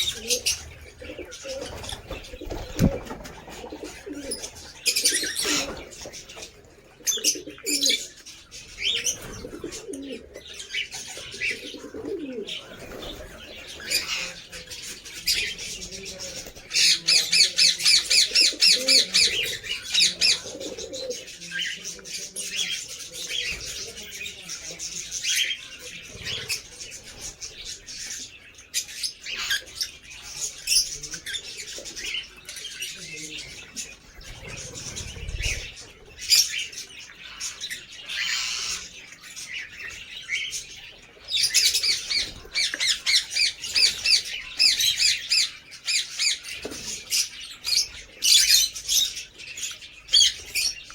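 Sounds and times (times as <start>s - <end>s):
lovebirds chirping: 0.0s - 50.9s.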